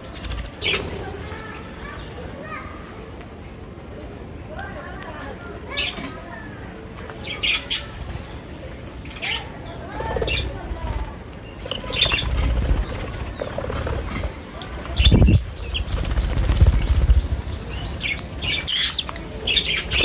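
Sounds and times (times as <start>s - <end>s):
low rumbling flutter: 9.8s - 20.0s
lovebirds chirping: 11.4s - 20.0s.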